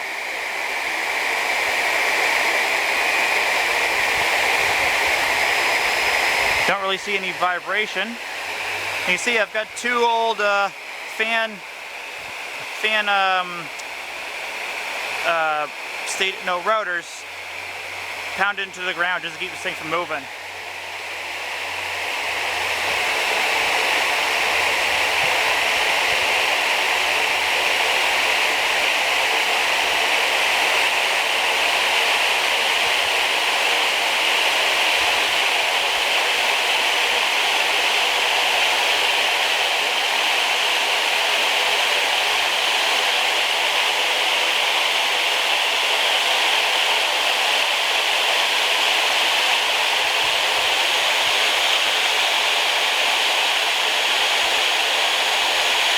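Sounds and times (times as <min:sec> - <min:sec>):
faint high motor whine: 0:00.0 - 0:40.2
fan blades rushing air: 0:00.0 - 0:55.9.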